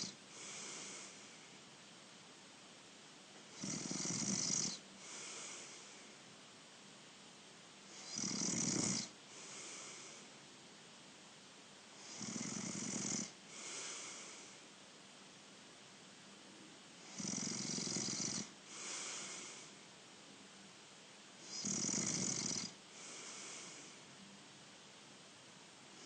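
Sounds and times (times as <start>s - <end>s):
person snoring: 3.6s - 5.9s, 8.0s - 10.2s, 12.0s - 14.6s, 17.1s - 19.7s, 21.4s - 24.0s.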